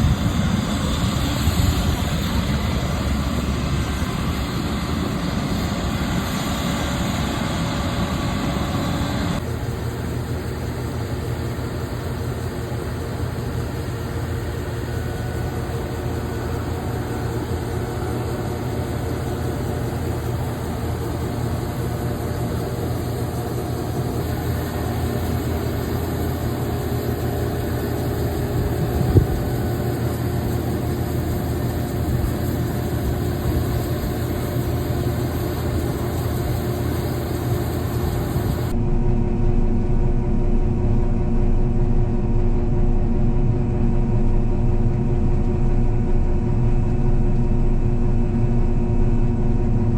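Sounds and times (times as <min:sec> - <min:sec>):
diesel engine running: 0:00.0 - 0:09.4, 0:15.5 - 0:38.8.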